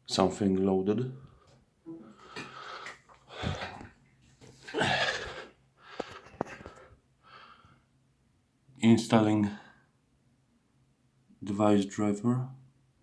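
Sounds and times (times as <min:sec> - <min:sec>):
person breathing close: 0:01.3 - 0:04.0, 0:04.7 - 0:07.9.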